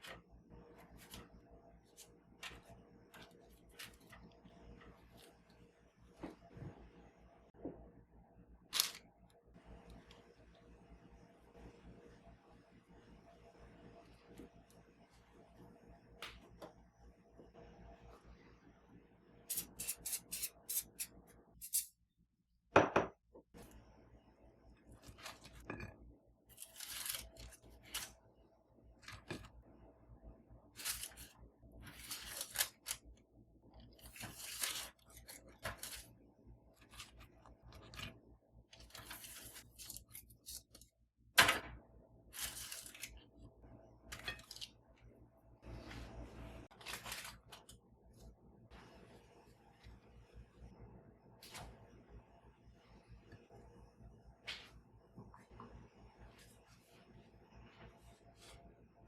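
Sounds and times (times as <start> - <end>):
packaging rustling and crinkling: 8.8 - 9.0.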